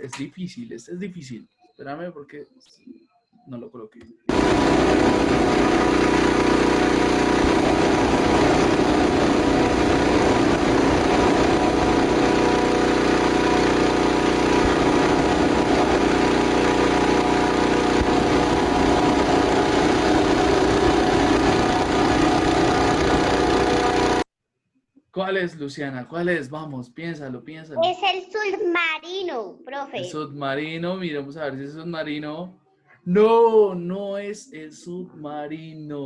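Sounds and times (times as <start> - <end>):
engine drone: 4.3 - 24.3.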